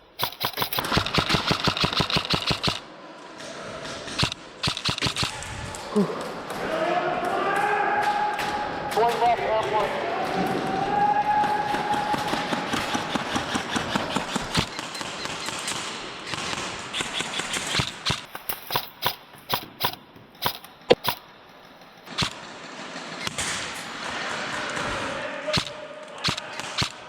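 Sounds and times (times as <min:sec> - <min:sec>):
airsoft guns firing: 0:00.0 - 0:05.5, 0:11.3 - 0:27.0.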